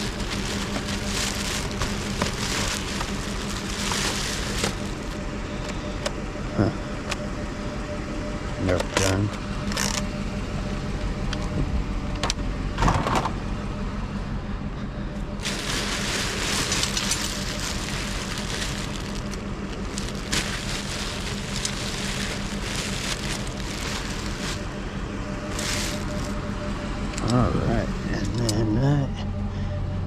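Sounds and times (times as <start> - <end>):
hard plastic crackling: 0.0 - 5.2, 15.4 - 24.7, 25.4 - 26.4
steady low hum: 0.0 - 30.0.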